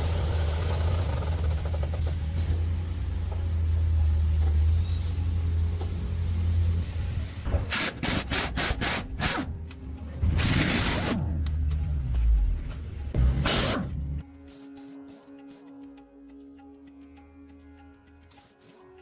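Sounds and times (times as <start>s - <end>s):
engine idling: 0.0s - 7.4s.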